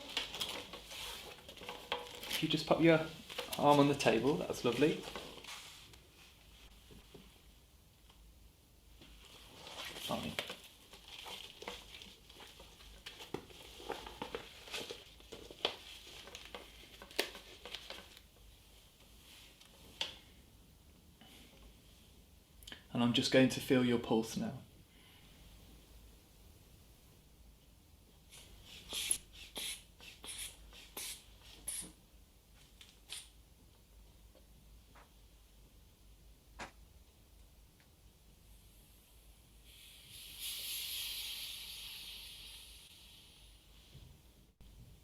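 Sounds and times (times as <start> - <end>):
fabric rustling and scraping: 0.0 - 7.1.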